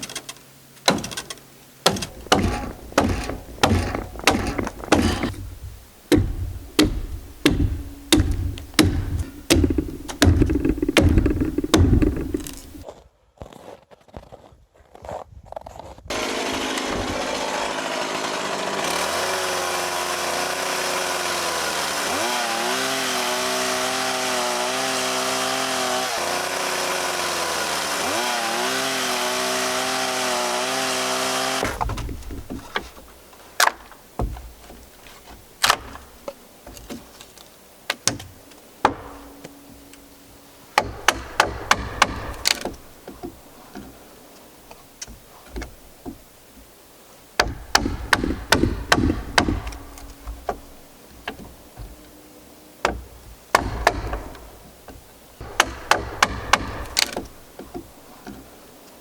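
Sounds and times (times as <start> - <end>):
handling noises: 0.0 - 12.9, 31.6 - 59.0
wooden knocks and clacks: 0.0 - 12.9, 31.6 - 39.8, 40.8 - 46.7, 47.4 - 52.1, 52.8 - 58.6
chainsaw running: 1.8 - 12.8, 16.1 - 32.5
low thuds: 1.8 - 12.8, 31.6 - 36.2.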